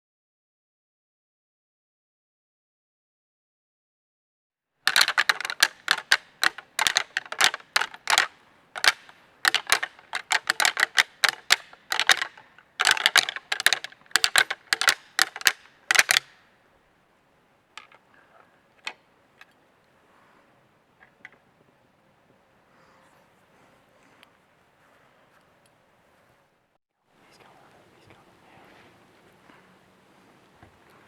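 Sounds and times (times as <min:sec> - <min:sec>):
sharp hard clicks and clacks: 0:04.9 - 0:16.3.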